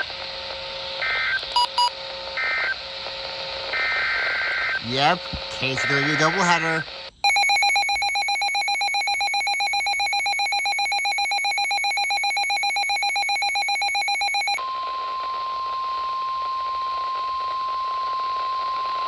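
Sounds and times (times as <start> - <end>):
steady single-pitch alarm tone: 7.2 - 18.9.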